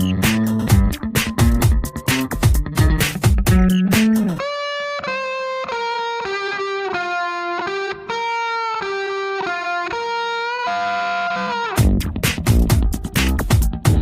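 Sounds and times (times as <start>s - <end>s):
drum beat: 0.0s - 4.4s, 11.8s - 14.0s
electric guitar slow melody: 0.0s - 14.0s.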